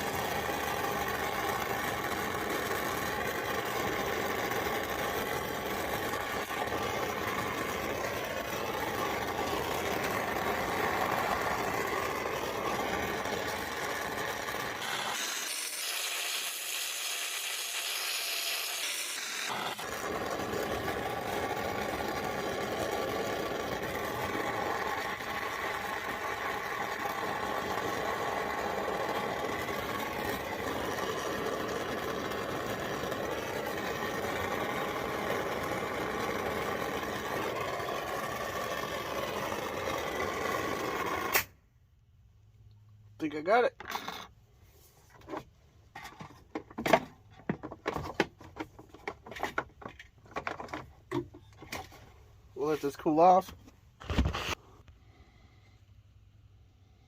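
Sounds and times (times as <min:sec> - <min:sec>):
gas torch flame hissing: 0:00.0 - 0:41.5.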